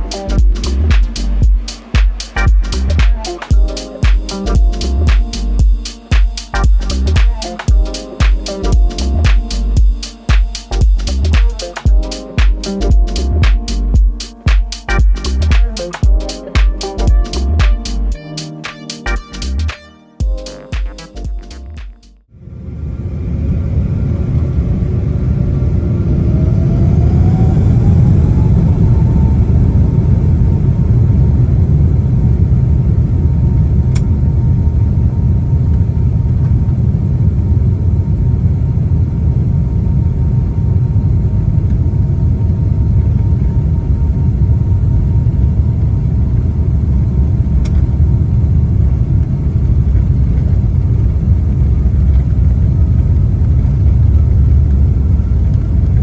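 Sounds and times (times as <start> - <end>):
loud constant engine rumble: 0.0 - 3.0, 4.4 - 5.8, 6.5 - 7.6, 8.6 - 9.9, 40.1 - 56.0
jet engine whine: 22.4 - 56.0.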